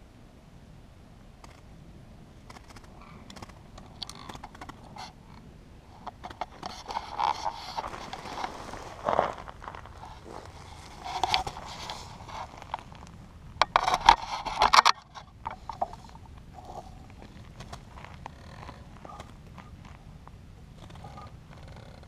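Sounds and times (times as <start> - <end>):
rustling of netting: 6.5 - 20.0.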